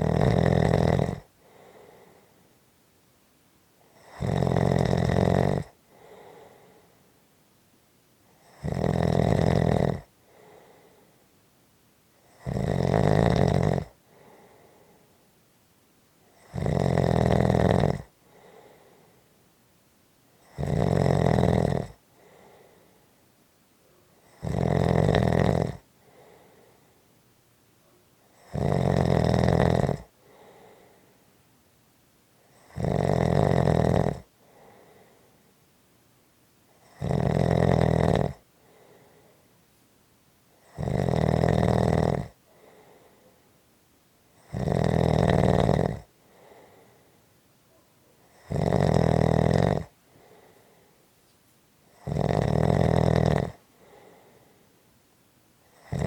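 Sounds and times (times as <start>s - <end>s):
person snoring: 0.0s - 2.4s, 3.9s - 6.9s, 8.4s - 11.1s, 12.3s - 15.0s, 16.4s - 19.2s, 20.4s - 23.0s, 24.2s - 26.9s, 28.4s - 31.1s, 32.5s - 35.3s, 36.8s - 39.4s, 40.6s - 43.3s, 44.4s - 47.1s, 48.3s - 50.9s, 51.9s - 54.6s, 55.7s - 56.0s
soft breath out: 1.3s - 2.6s, 5.8s - 7.2s, 10.2s - 11.4s, 14.0s - 15.4s, 18.2s - 19.4s, 22.0s - 23.2s, 25.9s - 27.1s, 30.1s - 31.4s, 34.4s - 35.6s, 38.5s - 39.6s, 42.4s - 43.6s, 46.1s - 47.8s, 50.0s - 51.6s, 53.7s - 54.9s.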